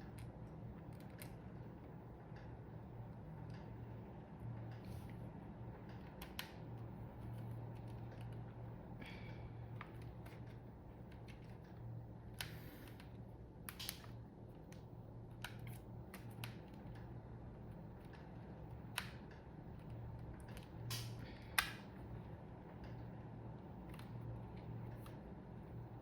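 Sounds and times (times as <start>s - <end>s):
low steady hum: 0.0s - 26.0s.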